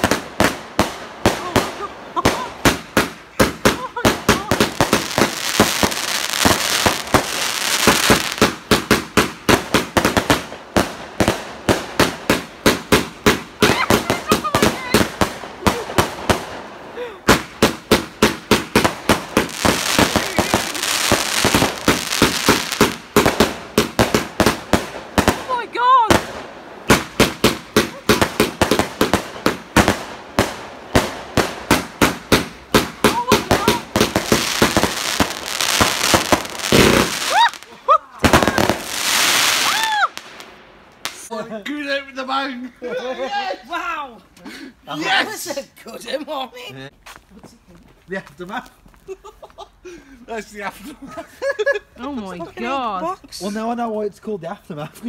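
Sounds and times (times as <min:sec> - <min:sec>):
fireworks sharp bangs: 0:00.0 - 0:41.3
fireworks crackling: 0:00.0 - 0:42.6
firework cake bangs: 0:17.2 - 0:37.5.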